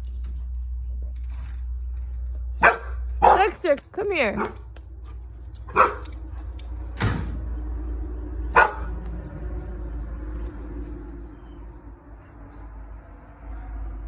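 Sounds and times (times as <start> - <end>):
dog barking: 2.6 - 3.6, 4.4 - 4.7, 5.7 - 6.1, 8.5 - 9.0.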